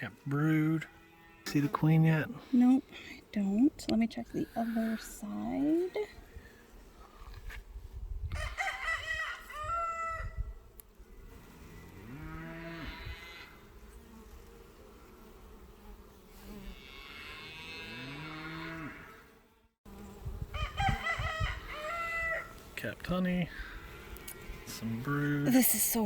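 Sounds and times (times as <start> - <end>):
cattle mooing: 0.0 - 1.8, 11.6 - 13.6, 16.7 - 19.3
rooster crowing: 8.3 - 10.6, 20.5 - 22.6.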